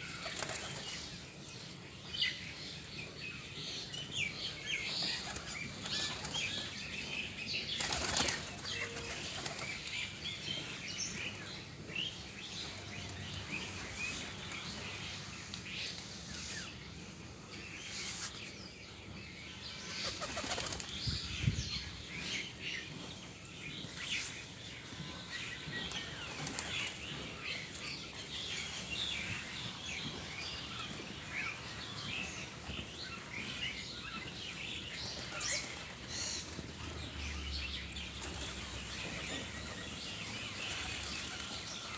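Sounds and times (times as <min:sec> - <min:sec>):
small birds chirping: 0:00.0 - 0:41.9
pigeons flapping wings: 0:07.8 - 0:09.8, 0:20.0 - 0:21.0.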